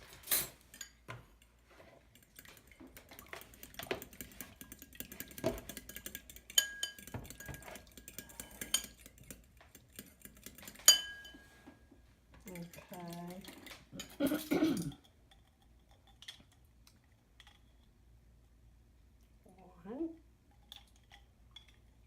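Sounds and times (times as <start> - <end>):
metal utensils clinking on dishes: 4.8 - 9.3.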